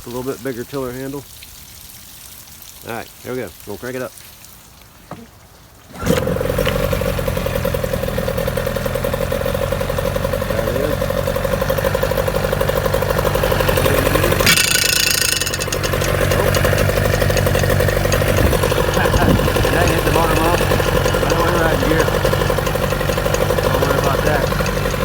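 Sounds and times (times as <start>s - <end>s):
outboard motor running: 5.9s - 25.0s.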